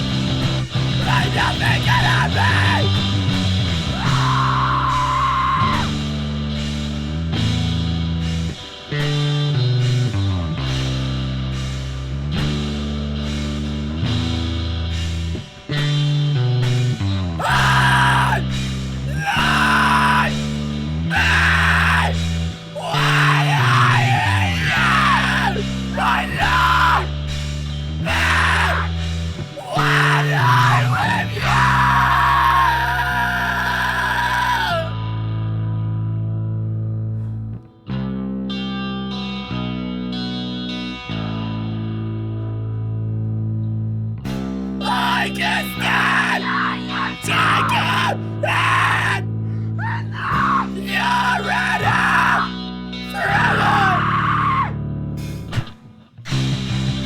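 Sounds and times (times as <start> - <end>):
loud rock music: 0.0 - 35.5, 44.3 - 57.0
person yelling vocals: 1.0 - 3.0, 3.9 - 5.9, 17.4 - 18.5, 19.1 - 20.4, 21.1 - 22.2, 22.8 - 27.1, 28.0 - 35.0, 44.8 - 54.8.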